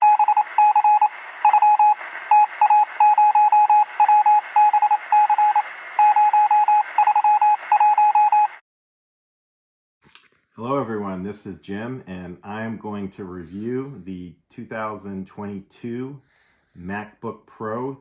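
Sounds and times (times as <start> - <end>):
morse code beeps: 0.0 - 8.6
radio hiss: 0.2 - 7.8.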